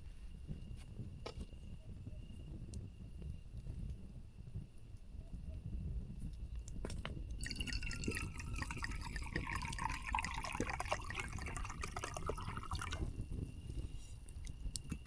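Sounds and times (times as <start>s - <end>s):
liquid pouring and dripping: 7.3s - 13.4s.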